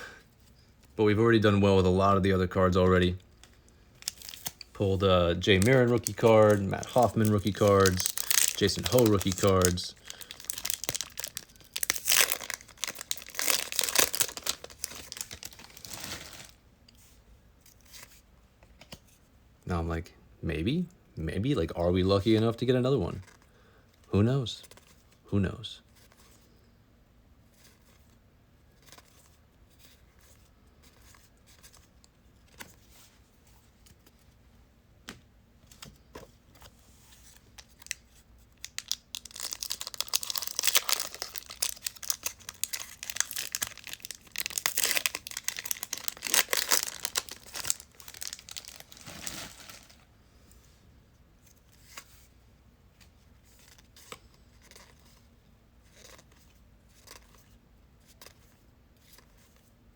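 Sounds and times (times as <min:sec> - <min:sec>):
wrapper tearing and crinkling: 0:04.0 - 0:04.6, 0:05.4 - 0:16.6, 0:38.6 - 0:50.0.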